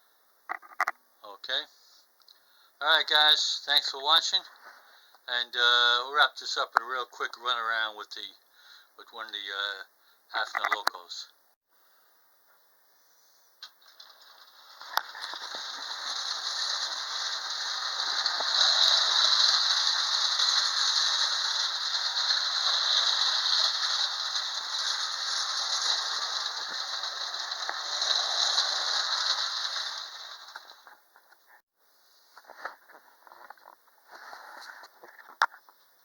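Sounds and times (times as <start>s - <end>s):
clockwork toy train whirring: 13.9s - 30.9s.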